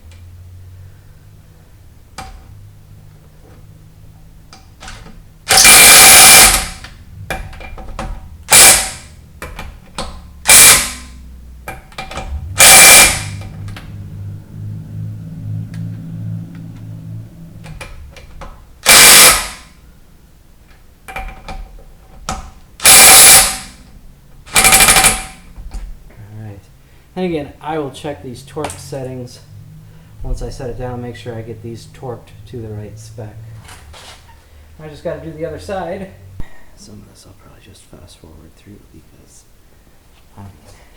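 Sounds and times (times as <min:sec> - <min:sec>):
impact wrench bursts: 0:04.8 - 0:13.7, 0:18.8 - 0:19.8, 0:22.3 - 0:23.8, 0:24.5 - 0:25.5.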